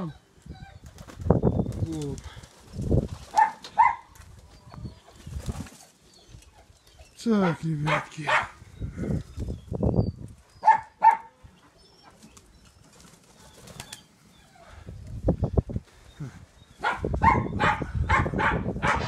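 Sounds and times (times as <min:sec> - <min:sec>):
pigeon wings flapping: 0:00.8 - 0:03.7, 0:12.3 - 0:14.0.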